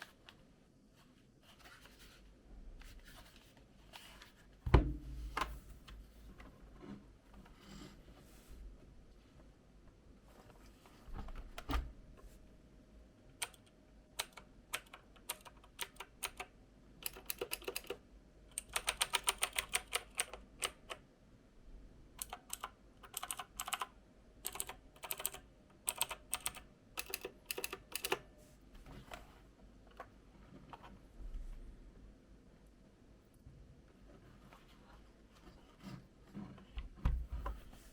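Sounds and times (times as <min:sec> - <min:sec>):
clicky mechanical keyboard typing: 0:13.3 - 0:21.0, 0:22.2 - 0:28.2.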